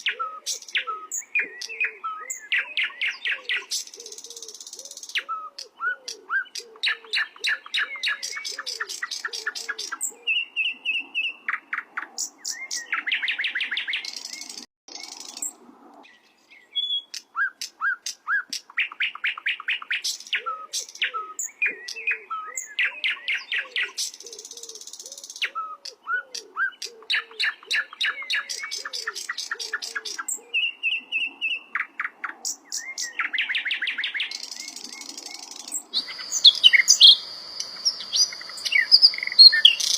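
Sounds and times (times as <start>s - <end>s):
flycatcher singing trills: 27.1s - 39.9s.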